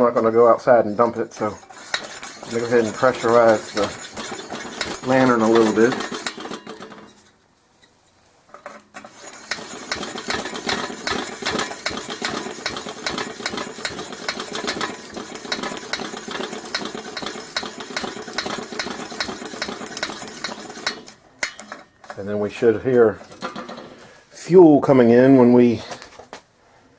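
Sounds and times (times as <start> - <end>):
plunger pump strokes clicking: 1.3 - 7.3, 8.5 - 22.3.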